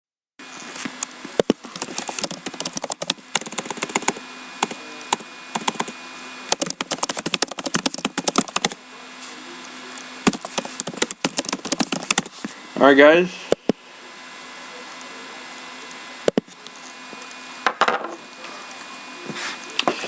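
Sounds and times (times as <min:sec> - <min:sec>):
rapid irregular clicking: 0:01.4 - 0:08.8, 0:10.2 - 0:12.4.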